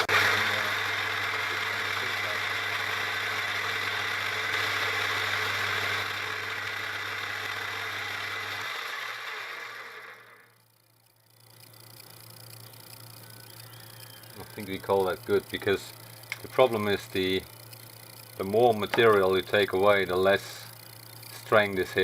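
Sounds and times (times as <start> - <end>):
milling machine running: 0.0 - 22.0.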